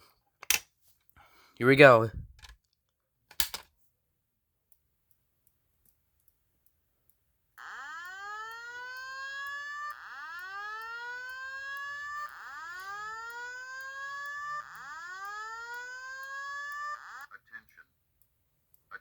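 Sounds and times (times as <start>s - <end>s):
fire alarm whoop tone: 7.6s - 17.3s.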